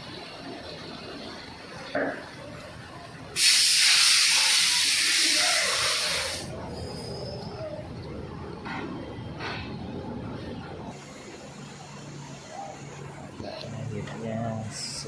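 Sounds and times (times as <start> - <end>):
loud steady hiss: 3.3 - 6.6, 10.9 - 15.0.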